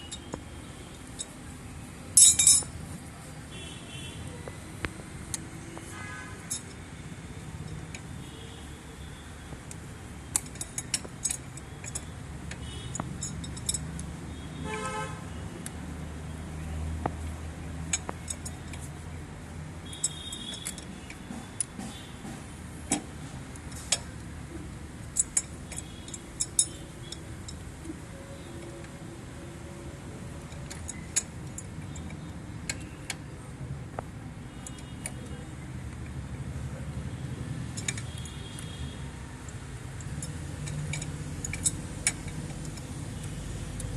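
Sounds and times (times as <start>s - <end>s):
sharp metallic clicks and clinks: 0.0s - 1.4s, 2.1s - 2.8s, 6.4s - 8.5s, 9.6s - 14.4s, 17.1s - 19.1s, 19.8s - 24.3s, 25.0s - 29.0s, 30.4s - 33.3s, 33.9s - 36.2s, 37.1s - 43.9s
low rumble of traffic: 0.0s - 43.9s.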